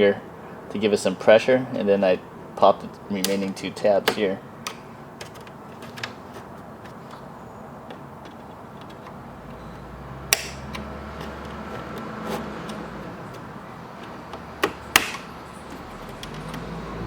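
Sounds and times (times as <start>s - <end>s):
screwdriver scraping plastic: 5.2s - 7.3s, 7.9s - 9.8s, 10.4s - 16.5s.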